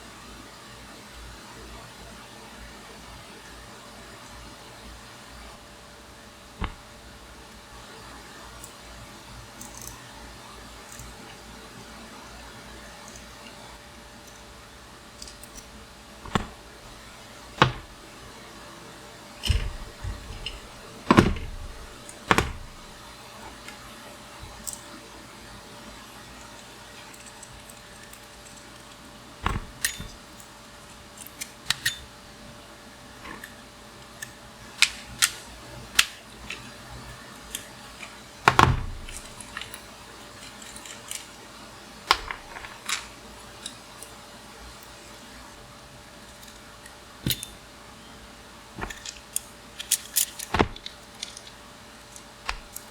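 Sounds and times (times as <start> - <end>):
metal tools clinking: 29.4 - 30.3.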